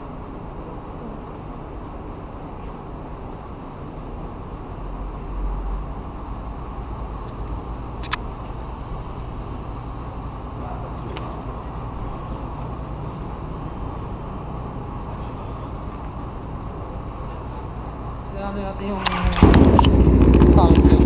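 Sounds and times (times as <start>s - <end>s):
vehicle rumble: 0.0s - 21.0s
sharp metallic click: 8.0s - 9.6s.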